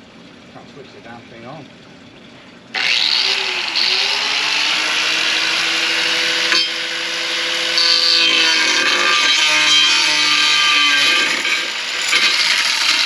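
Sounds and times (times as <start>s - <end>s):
angle grinder cutting metal tubing: 2.8s - 13.0s.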